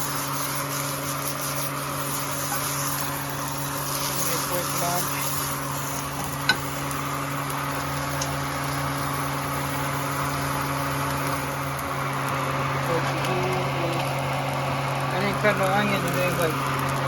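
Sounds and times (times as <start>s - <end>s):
microwave oven humming: 0.0s - 17.0s.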